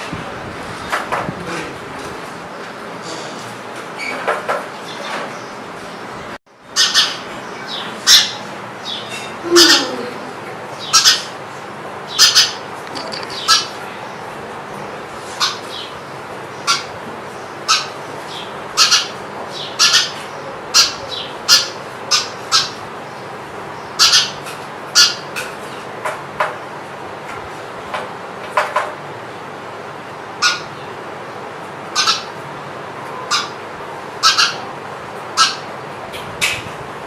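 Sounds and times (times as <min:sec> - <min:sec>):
canary chirping: 0:06.7 - 0:09.9, 0:10.7 - 0:11.3, 0:12.1 - 0:14.2, 0:15.3 - 0:25.3, 0:34.2 - 0:34.7.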